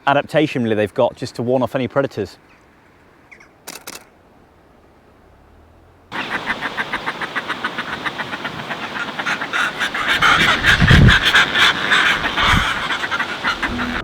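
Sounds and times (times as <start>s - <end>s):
seabirds cackling: 6.1s - 14.0s.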